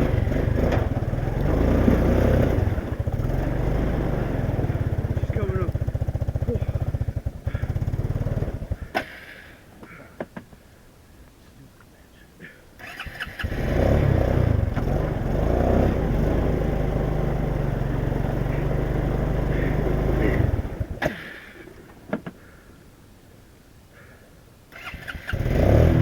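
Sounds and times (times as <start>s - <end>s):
atv engine running: 0.0s - 9.2s, 12.8s - 21.4s, 24.8s - 26.0s.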